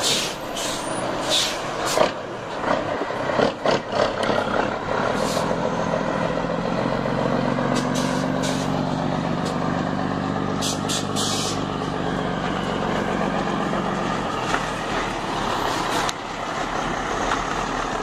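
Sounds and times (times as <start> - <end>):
short air hisses: 0.0 - 2.0, 5.2 - 5.6, 10.6 - 11.7
truck diesel engine running: 0.0 - 18.0.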